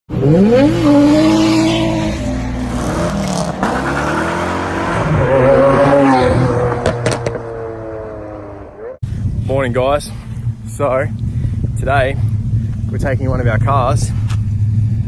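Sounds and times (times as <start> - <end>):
car engine revving: 0.1 - 8.9.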